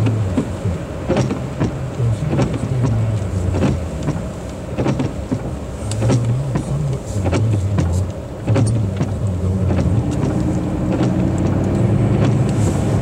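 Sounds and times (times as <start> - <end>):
car engine and road drone: 0.0 - 13.0.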